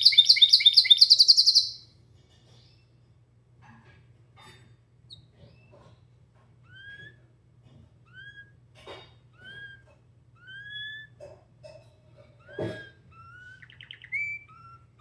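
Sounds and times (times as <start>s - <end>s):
canary whistled call: 0.0s - 1.8s.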